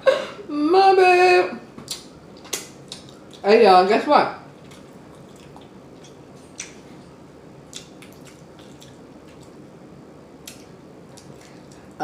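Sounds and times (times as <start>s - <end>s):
low room hum: 0.0s - 12.0s
wet eating clicks and squishes: 1.9s - 3.4s, 4.6s - 6.9s, 7.7s - 9.6s, 10.4s - 12.0s.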